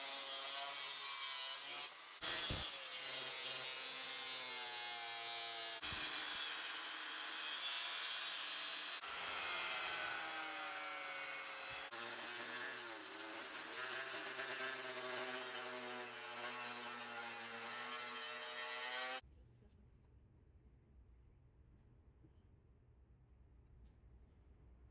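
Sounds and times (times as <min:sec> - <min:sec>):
power tool grinding steel: 0:00.0 - 0:19.2.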